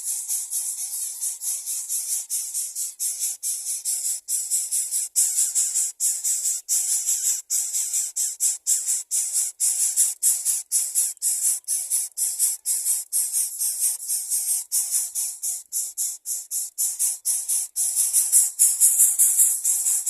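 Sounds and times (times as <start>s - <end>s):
rhythmic shaker-like hissing: 17.0s - 20.0s.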